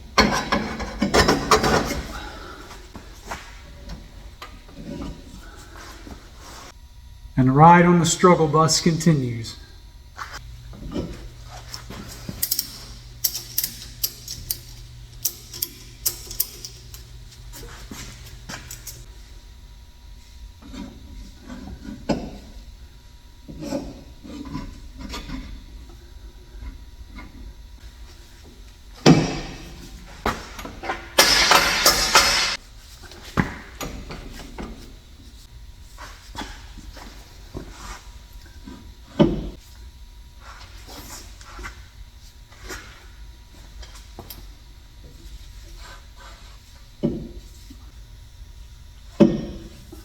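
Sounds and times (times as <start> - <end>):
steady low hum: 0.0 - 50.0
metallic tool clicks and clinks: 12.4 - 17.1.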